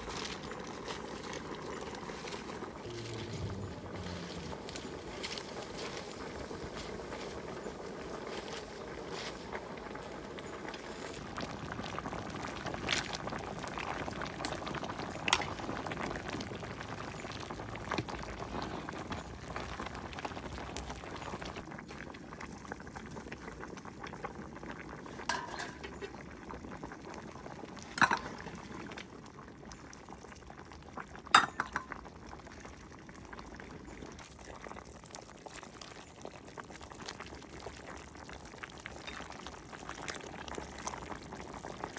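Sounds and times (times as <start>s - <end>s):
liquid bubbling in a pot: 0.0s - 41.9s.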